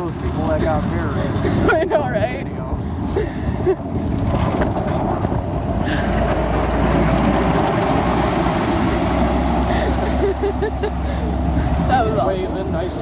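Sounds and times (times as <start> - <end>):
snowplow truck driving past: 4.5 - 13.0.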